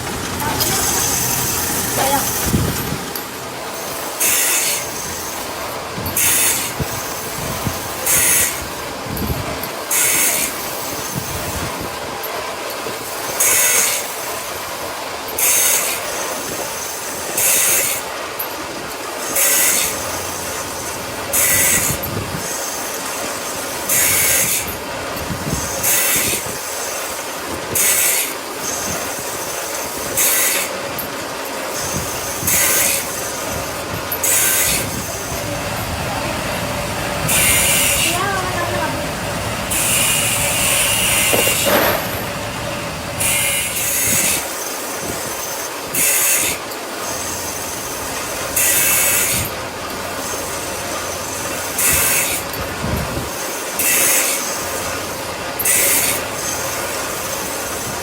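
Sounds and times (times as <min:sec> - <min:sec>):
steady machine noise: 0:00.0 - 0:58.0
machine hiss or screech: 0:03.7 - 0:08.8, 0:19.2 - 0:24.8, 0:25.4 - 0:35.9, 0:36.6 - 0:49.5, 0:53.3 - 0:58.0.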